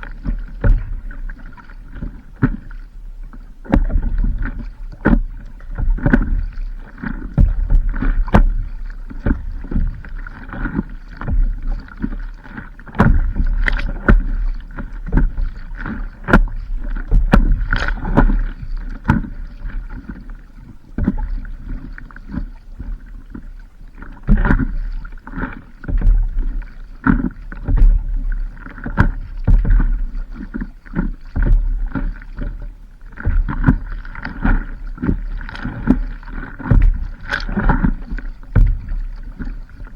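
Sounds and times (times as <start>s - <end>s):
water slapping against paddleboard: 0.0s - 39.9s.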